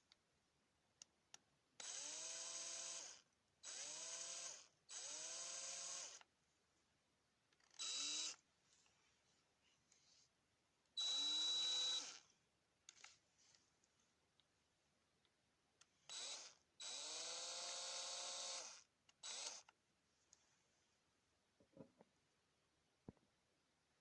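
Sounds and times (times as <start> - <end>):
electric power tool motor spinning: 1.8 - 6.2, 7.6 - 8.4, 11.0 - 12.3, 16.1 - 19.7.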